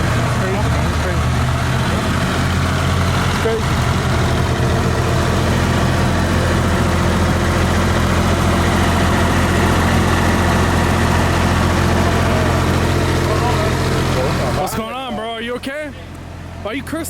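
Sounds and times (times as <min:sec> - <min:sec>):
large engine idling: 0:00.0 - 0:17.0.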